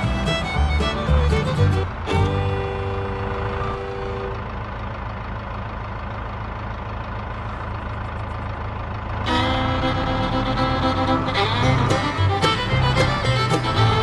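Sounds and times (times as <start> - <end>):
music held notes: 0.0 - 4.5, 9.2 - 14.0
truck engine idling: 0.0 - 14.0.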